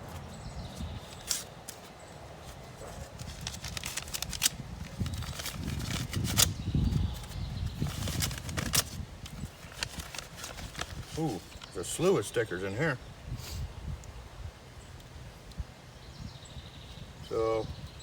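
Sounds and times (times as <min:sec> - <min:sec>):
package crackling and rustling: 0:00.0 - 0:12.1.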